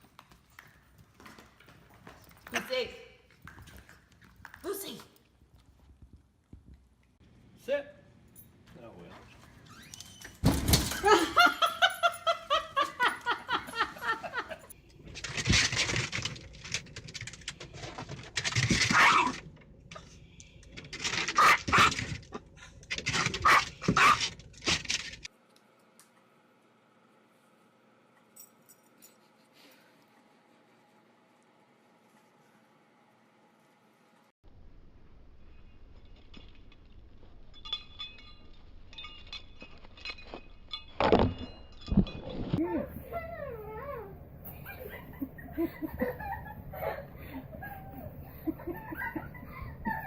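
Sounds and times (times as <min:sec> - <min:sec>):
dog barking: 0:23.4 - 0:24.2
light ringing clinks: 0:35.5 - 0:42.6.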